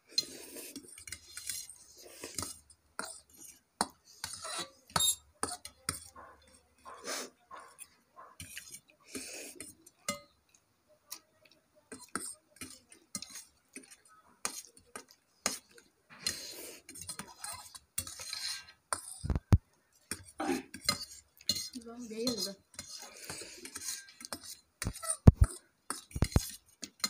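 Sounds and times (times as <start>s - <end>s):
cutlery scraping: 0.1s - 10.4s, 11.9s - 19.5s, 20.1s - 27.0s
cutlery clinking against bowls: 0.1s - 11.2s, 11.9s - 19.5s, 20.1s - 27.0s.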